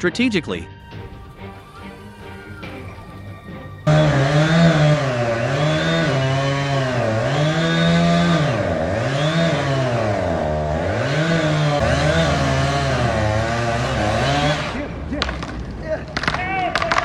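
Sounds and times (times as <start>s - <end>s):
chainsaw engine revving: 3.8s - 17.0s.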